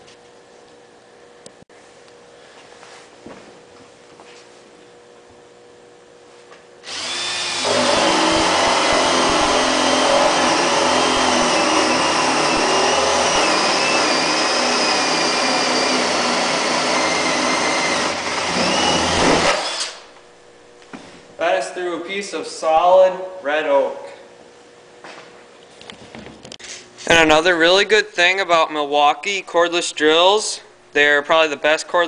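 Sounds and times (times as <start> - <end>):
cordless drill boring through wood: 6.8 - 20.1.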